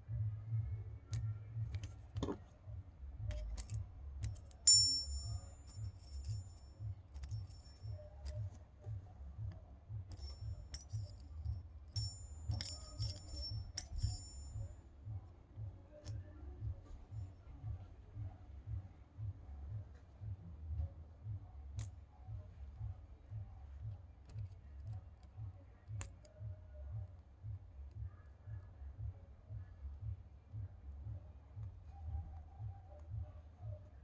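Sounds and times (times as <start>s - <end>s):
small metal clicks and clinks: 3.2s - 14.8s
high metallic ring: 3.6s - 8.9s, 10.0s - 14.9s.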